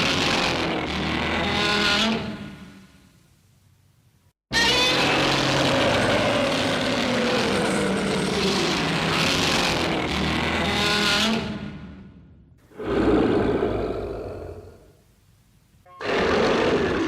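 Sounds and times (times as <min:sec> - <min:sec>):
monster roar shrieking: 0:04.6 - 0:09.6, 0:12.8 - 0:14.8, 0:16.0 - 0:17.0.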